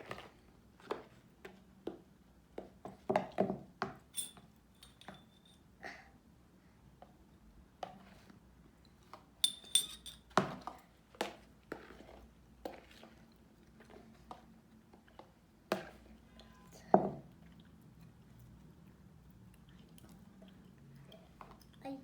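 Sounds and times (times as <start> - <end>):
high ringing clinks: 4.1 - 5.6, 9.4 - 10.2.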